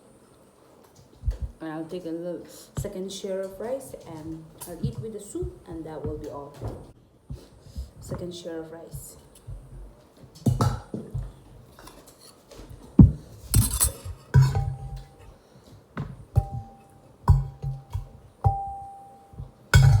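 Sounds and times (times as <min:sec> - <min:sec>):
metal spoon scraping plates: 0:11.6 - 0:15.4.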